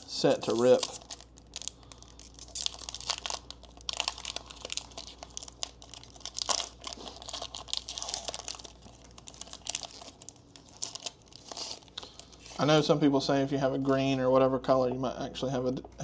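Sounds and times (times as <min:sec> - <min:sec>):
foil wrapper crinkling: 0:00.1 - 0:12.7.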